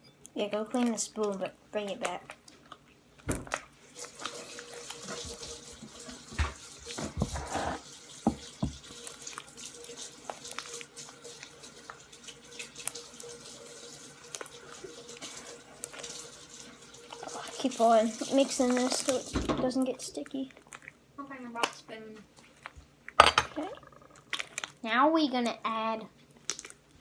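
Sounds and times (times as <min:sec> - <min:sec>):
tap water running into sink: 0:03.3 - 0:19.8
spoon knocking against sink: 0:08.3 - 0:08.8.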